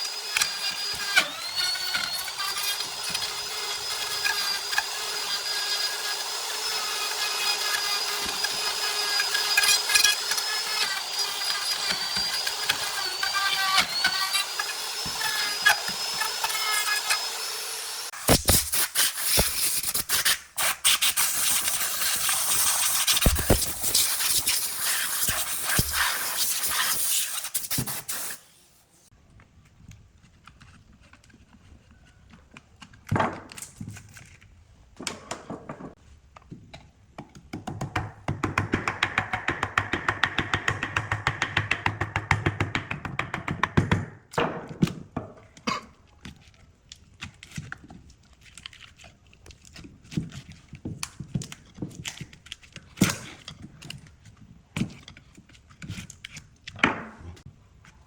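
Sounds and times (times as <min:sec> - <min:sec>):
knocks and taps: 0:35.0 - 0:45.4.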